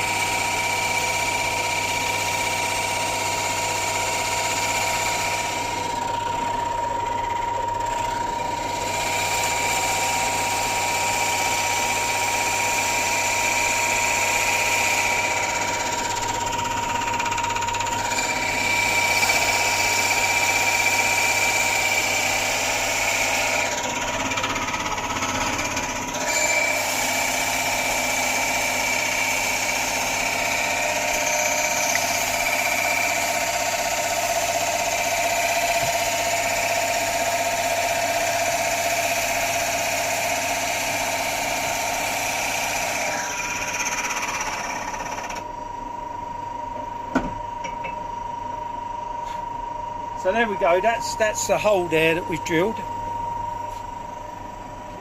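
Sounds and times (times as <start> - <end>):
drill bit boring into wood: 0.0 - 45.4
pillar drill motor whine: 0.0 - 55.0.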